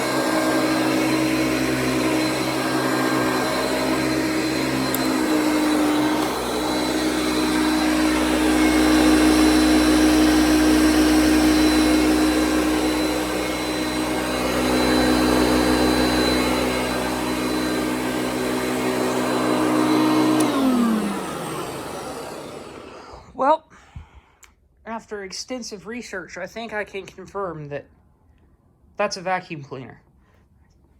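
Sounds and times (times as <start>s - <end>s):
vacuum cleaner running: 0.0s - 23.4s.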